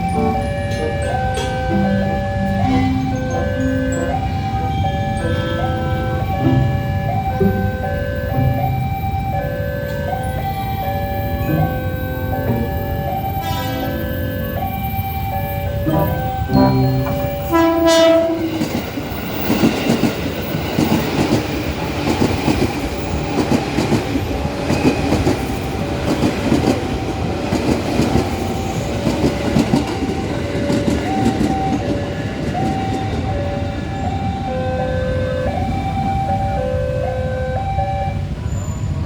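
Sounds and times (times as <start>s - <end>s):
held tones stepping in pitch: 0.0s - 9.4s, 10.8s - 13.5s, 15.8s - 18.6s.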